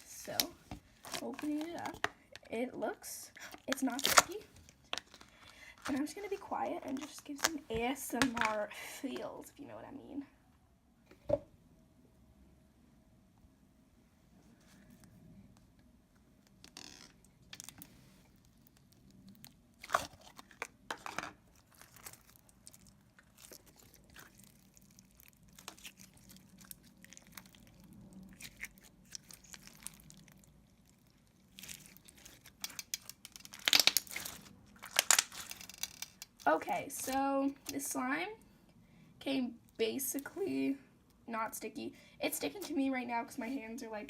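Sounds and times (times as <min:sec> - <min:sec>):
bead slime clicking and crackling: 0:16.5 - 0:37.8.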